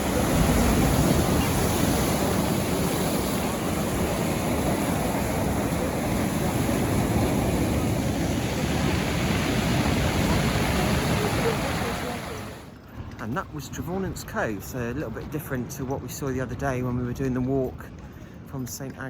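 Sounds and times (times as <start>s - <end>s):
waves washing into a cove: 0.0s - 12.7s
wind on microphone: 0.0s - 12.7s.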